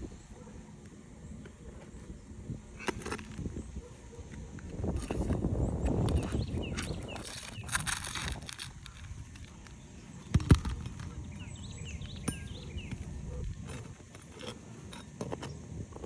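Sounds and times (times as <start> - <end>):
nails scraping and clicking: 4.2 - 15.6
faint bird chirps: 9.5 - 13.6.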